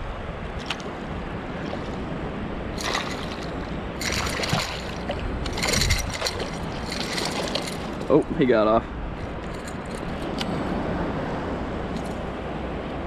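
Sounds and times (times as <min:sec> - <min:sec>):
surf water washing and sloshing: 0:00.0 - 0:13.0
short water splashes: 0:00.5 - 0:08.6.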